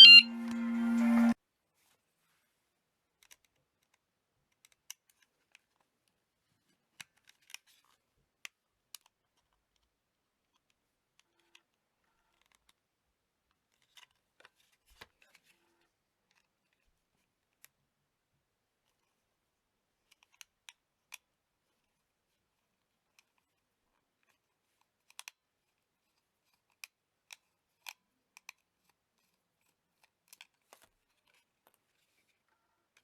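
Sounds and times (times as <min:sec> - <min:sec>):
motorbike alarm siren: 0:00.0 - 0:01.4.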